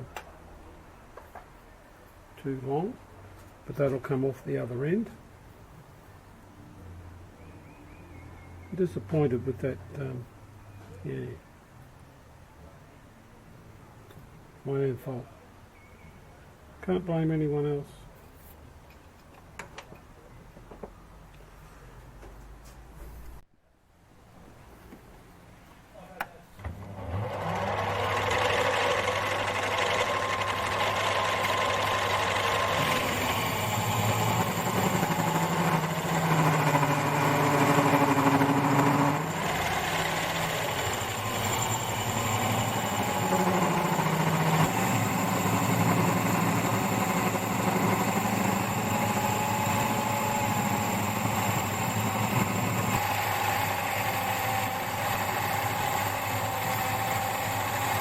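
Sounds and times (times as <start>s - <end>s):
lathe motor hum: 26.6s - 58.0s
lathe cutting tones: 26.8s - 58.0s.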